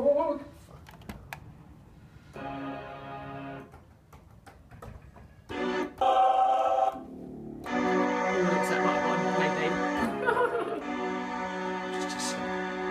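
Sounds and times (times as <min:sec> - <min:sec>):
keyboard playing organ-like chords: 0:02.3 - 0:03.8, 0:05.5 - 0:12.9.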